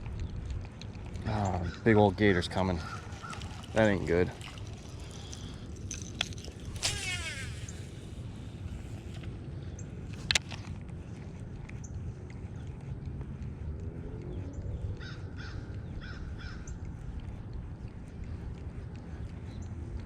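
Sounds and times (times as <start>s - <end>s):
low wind rumble: 0.0s - 20.0s
crow cawing: 1.6s - 3.6s, 15.0s - 16.6s.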